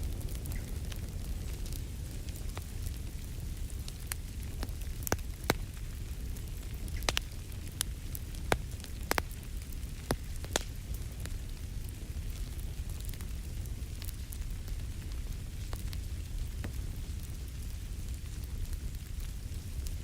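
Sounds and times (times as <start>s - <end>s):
low rumble of flames: 0.0s - 20.0s
wood fire crackling: 0.0s - 20.0s
sharp pops and snaps: 4.1s - 5.8s, 6.9s - 7.4s, 8.4s - 9.4s, 10.0s - 10.8s.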